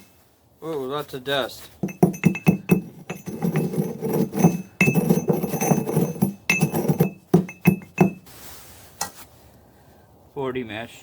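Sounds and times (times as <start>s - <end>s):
pestle pounding rock in mortar: 1.8s - 8.3s.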